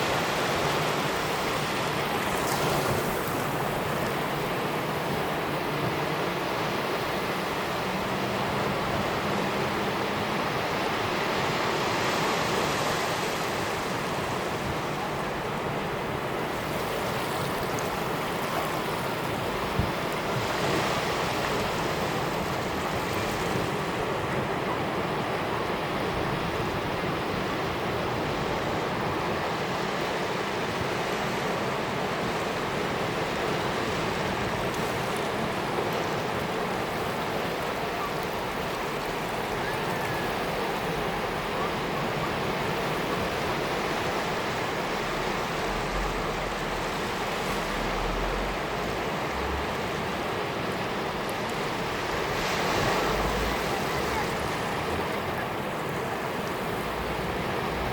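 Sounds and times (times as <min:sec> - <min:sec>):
sea waves washing: 0:00.0 - 0:57.9.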